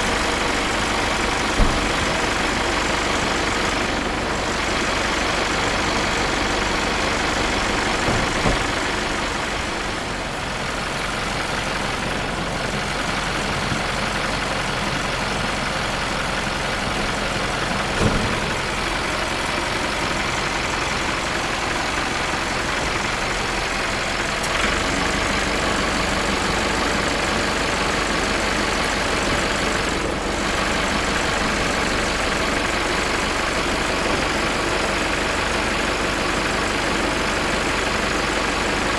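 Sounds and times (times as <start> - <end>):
diesel engine idling: 0.0 - 38.9
short knocks: 0.6 - 2.4, 7.1 - 9.3.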